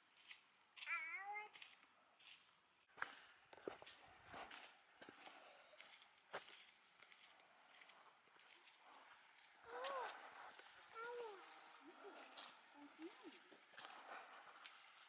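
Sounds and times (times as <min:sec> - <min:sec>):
footsteps crunching on forest floor: 0:00.2 - 0:15.0
high-pitched insect drone: 0:04.1 - 0:06.0.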